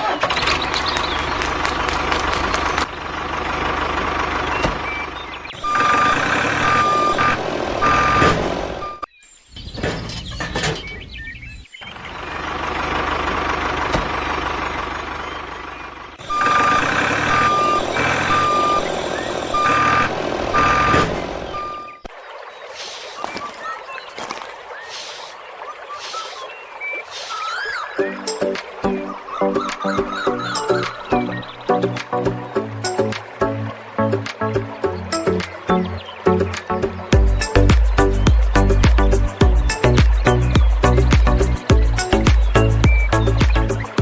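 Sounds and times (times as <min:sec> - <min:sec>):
engine running: 0:00.0 - 0:09.0, 0:11.8 - 0:22.0, 0:22.7 - 0:29.3, 0:30.1 - 0:44.0
vehicle reversing alarm beeping: 0:04.4 - 0:09.1, 0:16.2 - 0:22.1.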